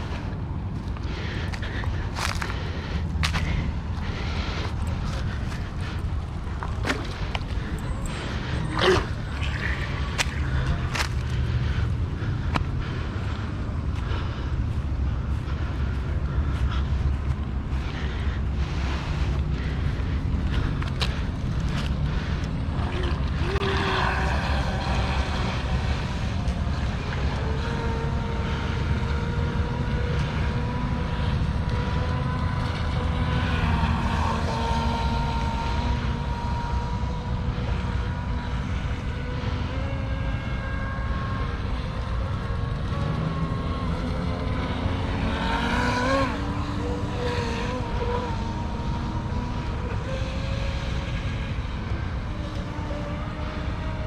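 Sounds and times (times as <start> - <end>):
electric motor whining: 19.6 - 54.0.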